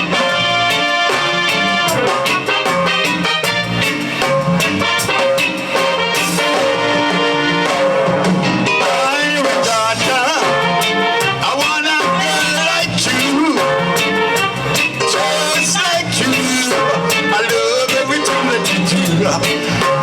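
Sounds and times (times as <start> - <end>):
upbeat band music with drums: 0.0 - 20.0
person singing: 8.7 - 14.3, 15.0 - 20.0.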